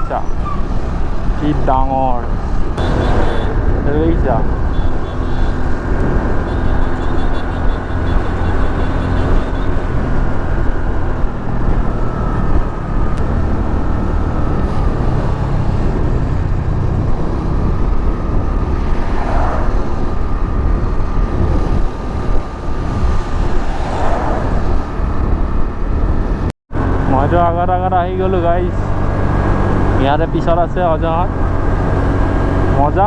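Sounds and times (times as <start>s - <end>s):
wind buffeting microphone: 5.5s - 27.0s.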